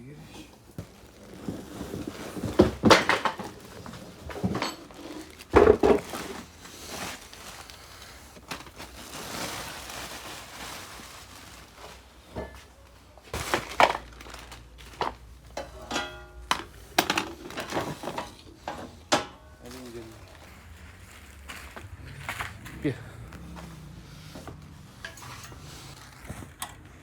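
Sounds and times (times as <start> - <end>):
soft rustling: 0.2 - 2.8, 3.4 - 15.6
knocks and clatters of parts: 0.8 - 7.6, 13.4 - 20.4.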